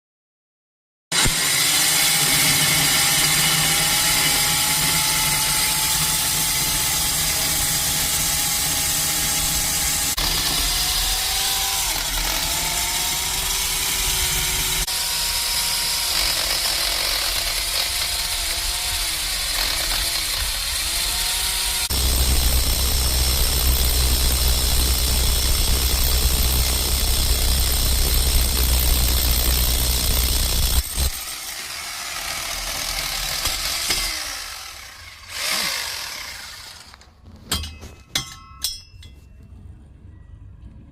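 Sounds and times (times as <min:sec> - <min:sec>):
core drill boring through wall: 0:01.1 - 0:37.0
low grinding: 0:19.6 - 0:31.2.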